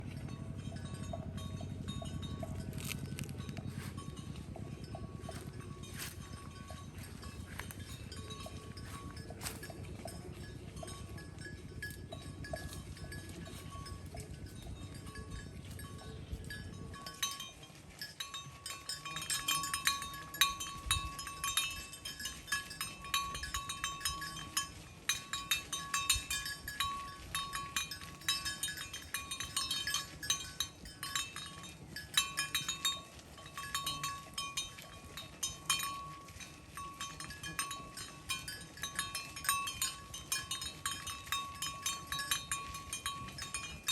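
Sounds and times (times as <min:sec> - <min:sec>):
cowbells clanking: 0:00.0 - 0:43.9.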